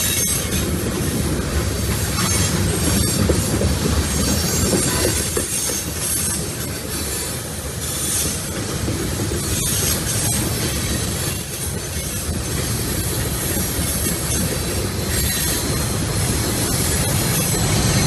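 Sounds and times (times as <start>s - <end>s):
train wheels rumbling on rails: 0.0s - 18.0s
high wheel squeal: 9.4s - 18.0s.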